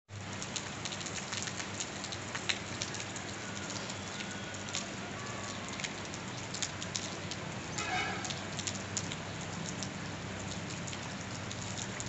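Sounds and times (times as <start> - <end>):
steady rain hiss: 0.1 - 12.0
raindrops ticking: 0.2 - 12.0.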